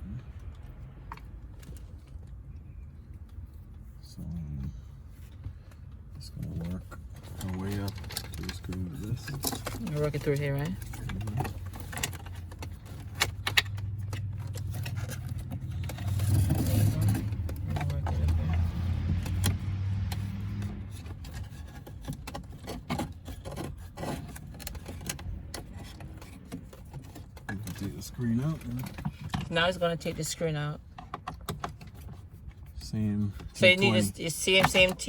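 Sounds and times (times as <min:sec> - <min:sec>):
plastic clicks and rattles: 0:07.3 - 0:20.2.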